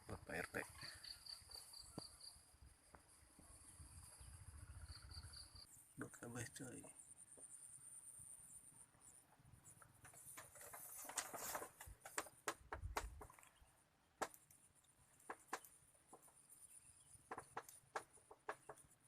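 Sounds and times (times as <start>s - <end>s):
crickets droning: 0.0s - 19.0s
brief rustle: 10.0s - 12.3s.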